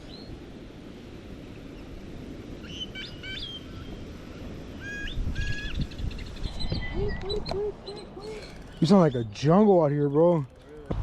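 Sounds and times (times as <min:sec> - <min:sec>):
birds chirping: 0:02.6 - 0:11.0.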